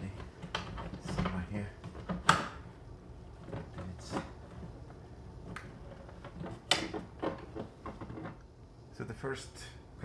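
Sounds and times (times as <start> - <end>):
plastic trim clicks and knocks: 0.2 - 2.6.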